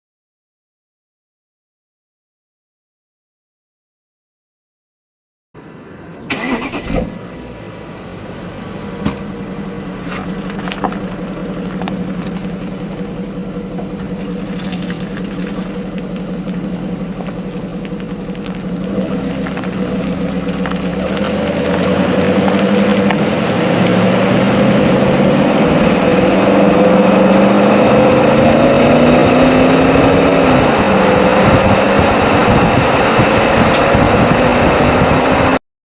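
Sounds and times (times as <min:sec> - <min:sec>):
diesel engine running: 0:05.6 - 0:35.6.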